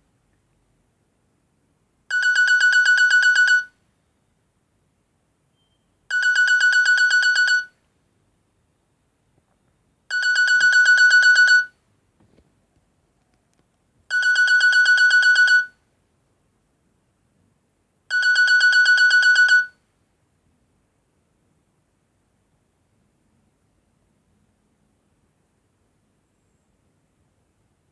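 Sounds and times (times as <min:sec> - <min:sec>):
trilling electronic ringtone: 0:02.1 - 0:03.7, 0:06.1 - 0:07.7, 0:10.1 - 0:11.7, 0:14.1 - 0:15.7, 0:18.1 - 0:19.7.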